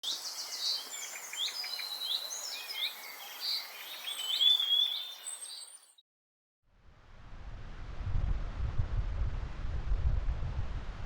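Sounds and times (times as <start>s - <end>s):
songbirds singing: 0.0s - 6.0s.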